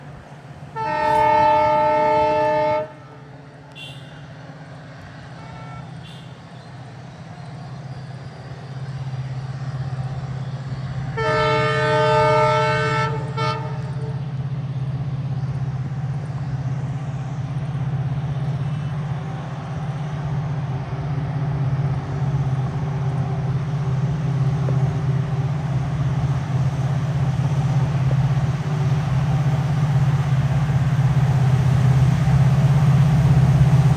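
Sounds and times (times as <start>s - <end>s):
locomotive engine hum: 0.0s - 33.9s
locomotive horn blasts: 0.8s - 4.3s, 5.4s - 6.4s, 11.2s - 14.2s.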